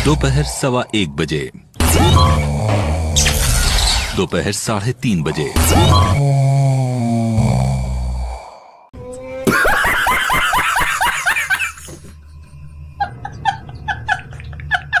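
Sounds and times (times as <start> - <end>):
rapid laughing: 9.4 - 12.2.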